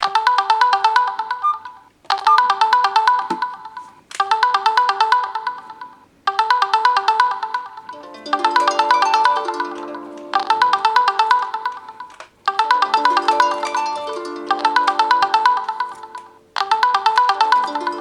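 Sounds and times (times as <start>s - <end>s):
lower melody: 7.9s - 11.4s, 12.5s - 16.5s.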